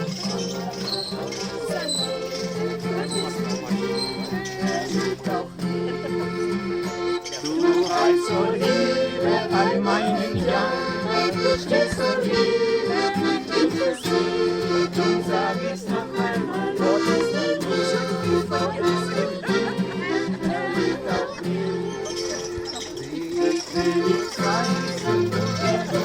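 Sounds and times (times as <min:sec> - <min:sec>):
accordion music: 0:00.0 - 0:26.0.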